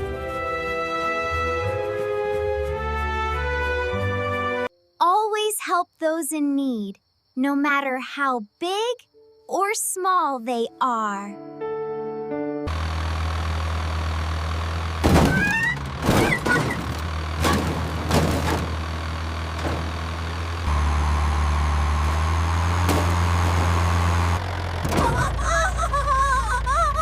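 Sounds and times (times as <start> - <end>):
low engine hum: 12.7 - 27.0
sharp clunks and knocks: 15.0 - 20.4, 22.6 - 25.4.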